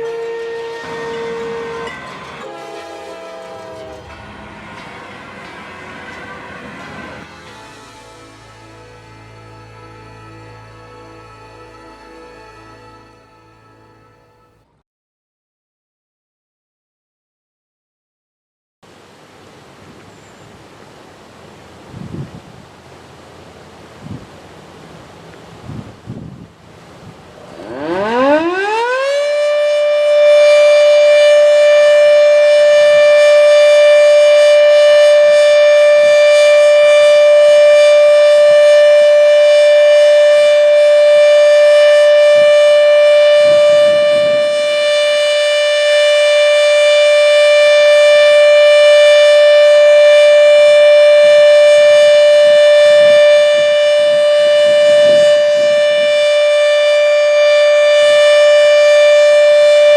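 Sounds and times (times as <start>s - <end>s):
warning siren winding up: 27.5s - 59.9s.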